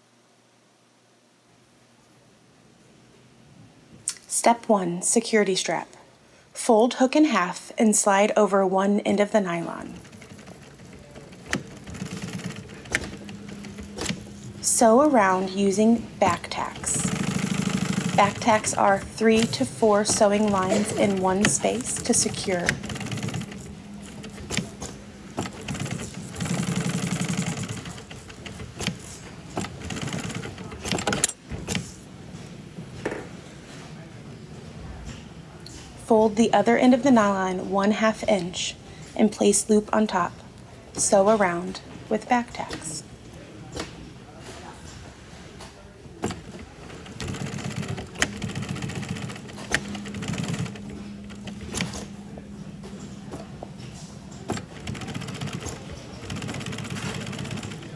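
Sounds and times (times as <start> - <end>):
sewing machine stitching: 9.6 - 32.0, 46.2 - 52.2, 54.4 - 57.9
sewing machine motor hum: 9.7 - 31.9, 46.2 - 57.9.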